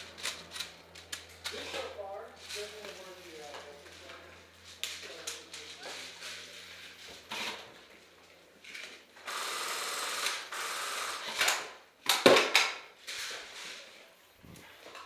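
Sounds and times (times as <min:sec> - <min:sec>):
airsoft gun full-auto rattle: 0:08.7 - 0:12.8.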